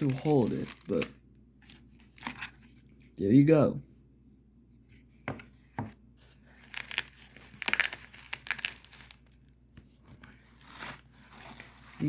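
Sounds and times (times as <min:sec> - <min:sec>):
packaging crinkling and rustling: 0:00.0 - 0:03.1, 0:06.2 - 0:12.0.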